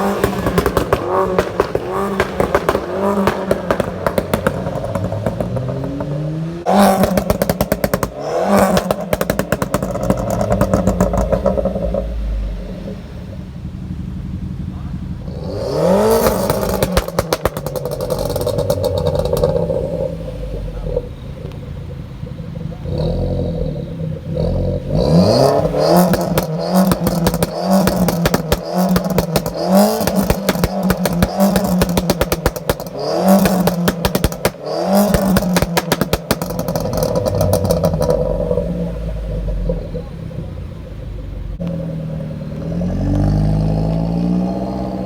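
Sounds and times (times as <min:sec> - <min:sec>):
car engine revving: 0:00.0 - 0:45.0
exhaust pops and crackles: 0:00.0 - 0:45.0.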